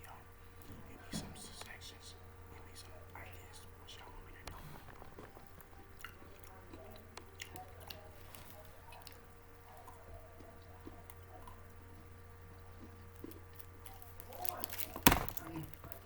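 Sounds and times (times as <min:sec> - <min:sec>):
chewing snack food: 0:04.0 - 0:16.0.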